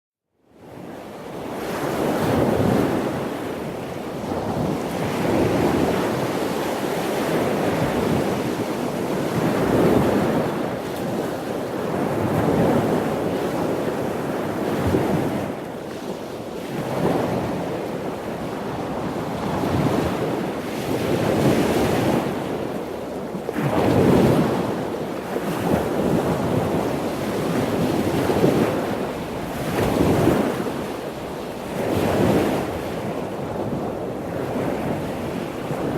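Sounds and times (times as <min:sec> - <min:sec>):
ocean waves breaking on shore: 0:00.6 - 0:35.9.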